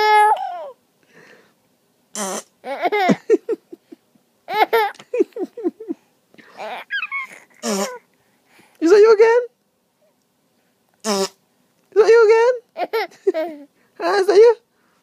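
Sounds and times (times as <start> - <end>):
baby laughing: 0.0 - 0.8, 2.3 - 3.8, 4.5 - 8.0, 12.8 - 13.7
fart noise: 2.2 - 2.5, 7.6 - 8.0, 11.0 - 11.4.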